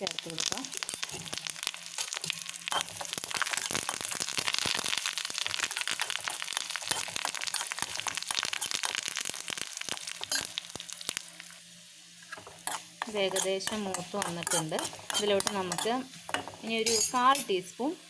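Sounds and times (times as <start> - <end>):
leaves crackling in hot oil: 0.0 - 18.0
oil sizzling: 0.0 - 18.0.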